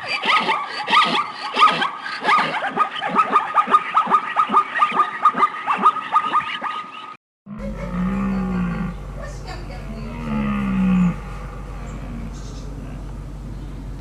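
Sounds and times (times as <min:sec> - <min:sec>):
canine yipping rapidly: 0:00.0 - 0:07.2
low drawn-out animal call: 0:00.1 - 0:13.3.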